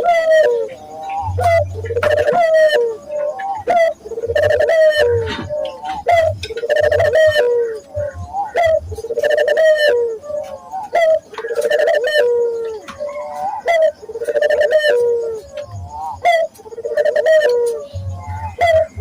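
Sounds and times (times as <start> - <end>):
sharp rising bird notes: 0.0 - 10.2
doves cooing: 0.0 - 19.0.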